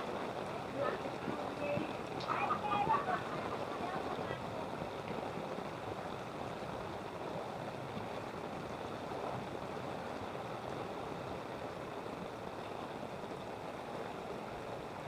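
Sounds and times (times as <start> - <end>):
wading through sloshing water: 0.0 - 8.2.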